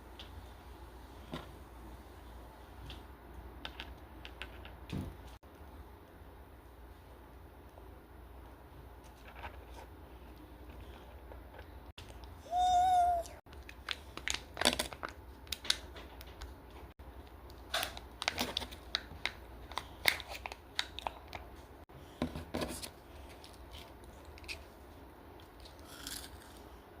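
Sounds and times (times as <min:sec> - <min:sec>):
foil wrapper crinkling and tearing: 0:13.6 - 0:15.9.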